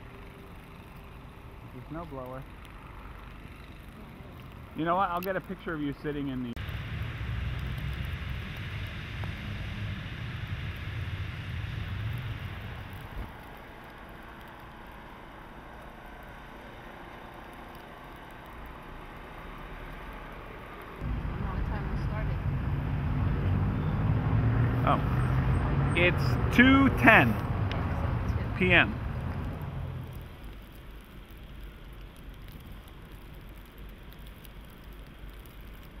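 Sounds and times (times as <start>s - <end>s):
low engine rumble: 0.0s - 36.0s
steady hiss: 0.1s - 15.6s
snowstorm hiss: 0.5s - 36.0s
low rumble: 6.5s - 13.8s, 21.0s - 31.0s.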